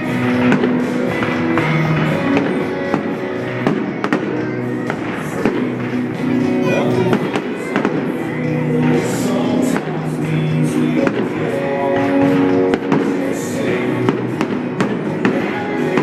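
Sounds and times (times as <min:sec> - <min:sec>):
fireworks bangs: 0:00.0 - 0:16.0
loud music with beat: 0:00.0 - 0:16.0.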